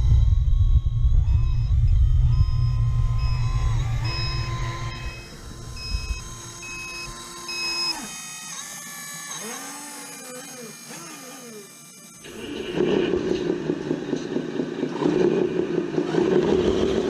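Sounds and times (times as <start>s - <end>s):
low motor rumble: 0.0s - 8.2s, 12.2s - 17.0s
electronic reversing beeps: 0.0s - 9.6s
electronic whines: 0.0s - 17.0s.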